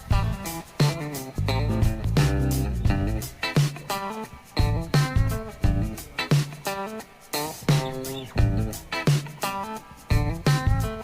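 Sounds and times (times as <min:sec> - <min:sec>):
steady beat: 0:00.0 - 0:11.0
plucked guitar notes: 0:01.2 - 0:04.0, 0:07.4 - 0:11.0
bass line: 0:01.4 - 0:03.3.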